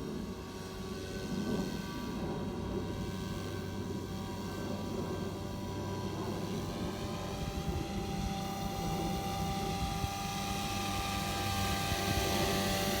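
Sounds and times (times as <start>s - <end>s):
electric motor and gears whine: 6.9s - 13.0s.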